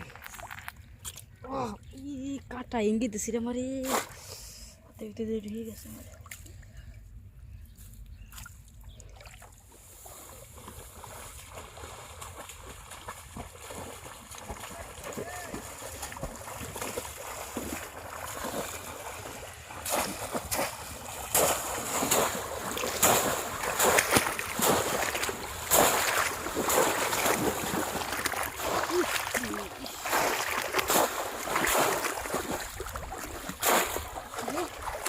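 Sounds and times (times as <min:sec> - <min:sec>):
water splashing: 0:00.0 - 0:01.4, 0:08.4 - 0:35.0.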